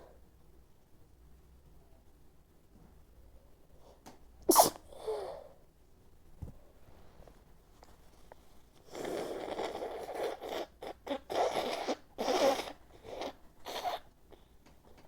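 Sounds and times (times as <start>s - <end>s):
woman blowing her nose: 4.5s - 5.2s, 8.9s - 14.1s.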